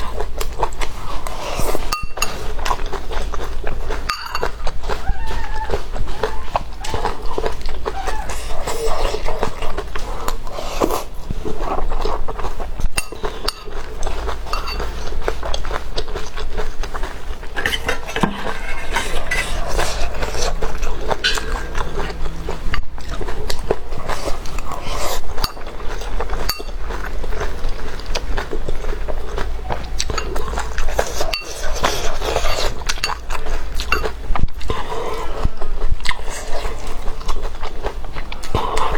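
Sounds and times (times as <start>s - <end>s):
chewing and biting: 0.0s - 38.9s
utensils clinking on a dish: 1.8s - 3.0s, 4.1s - 4.7s, 13.0s - 15.1s, 17.6s - 22.9s, 25.4s - 25.8s, 26.4s - 27.0s, 30.0s - 34.2s.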